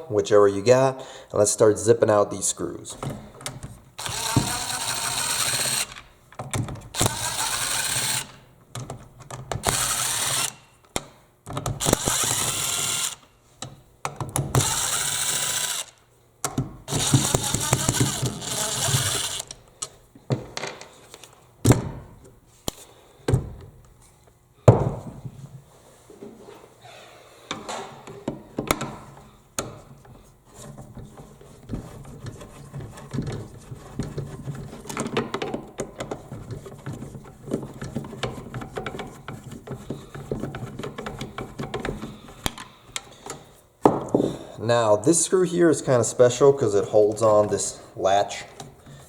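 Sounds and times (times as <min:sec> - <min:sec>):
parts clicking and knocking: 0:03.0 - 0:21.8, 0:30.9 - 0:44.3
drill driver unscrewing screws: 0:04.0 - 0:06.1, 0:06.9 - 0:08.4, 0:09.6 - 0:10.6, 0:11.8 - 0:13.3, 0:14.6 - 0:16.0, 0:16.9 - 0:19.6.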